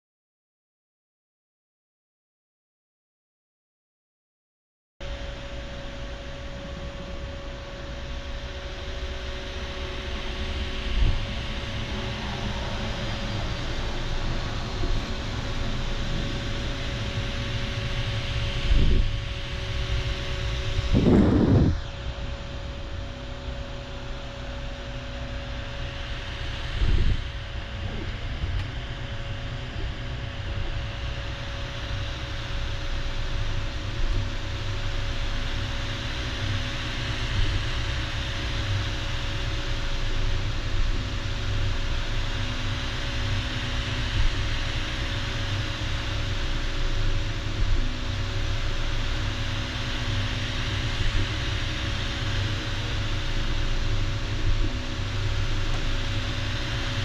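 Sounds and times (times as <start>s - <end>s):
fan hum and hiss: 5.0s - 57.0s
stepper motors whining: 6.5s - 32.8s.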